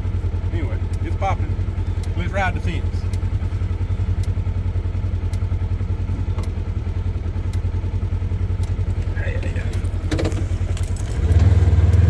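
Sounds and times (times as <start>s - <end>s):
small engine running: 0.0s - 12.0s
sharp ticks: 0.8s - 1.1s, 1.9s - 3.3s, 5.2s - 5.6s, 7.4s - 7.7s, 8.5s - 8.8s.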